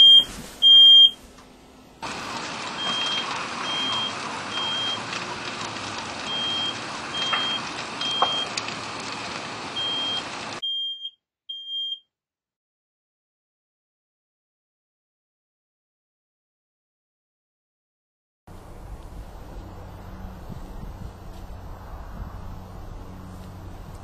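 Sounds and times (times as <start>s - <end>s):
smoke alarm chirping: 0.0s - 1.2s, 2.7s - 5.1s, 6.2s - 8.6s, 9.7s - 12.0s
loud steady rushing noise: 1.7s - 10.6s, 18.5s - 24.0s.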